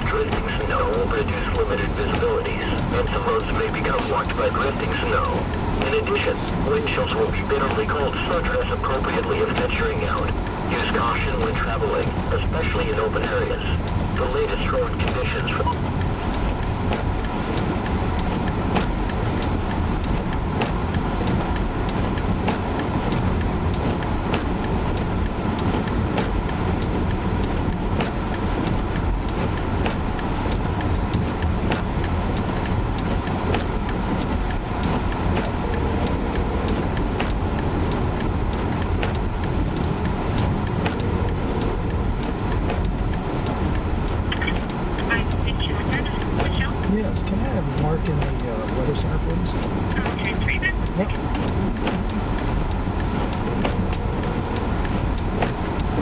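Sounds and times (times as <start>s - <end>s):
car cabin road rumble: 0.0s - 56.0s
sharp irregular ticks: 0.0s - 56.0s.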